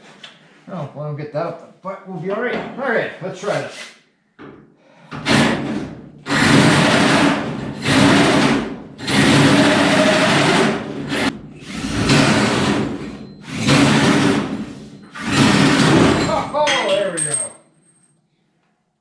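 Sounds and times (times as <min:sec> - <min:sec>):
handheld power tool running: 0:05.2 - 0:14.6, 0:15.2 - 0:16.2.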